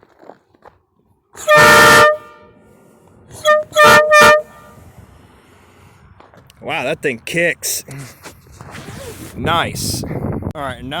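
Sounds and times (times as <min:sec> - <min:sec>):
train air horn honking: 0:01.4 - 0:02.6, 0:03.4 - 0:04.8.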